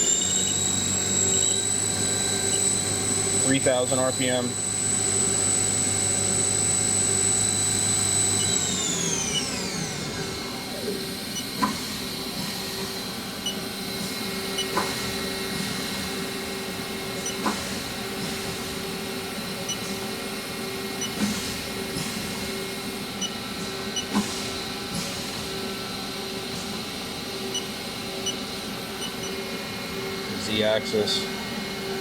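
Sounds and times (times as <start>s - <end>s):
lathe spindle hum and whine: 0.0s - 32.0s.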